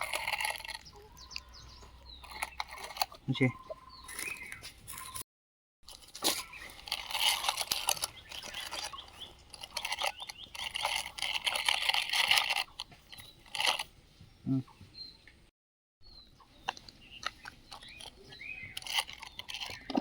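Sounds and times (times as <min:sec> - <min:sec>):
small rocks crunching and rattling: 0:00.0 - 0:03.2, 0:05.8 - 0:13.9, 0:16.7 - 0:20.0.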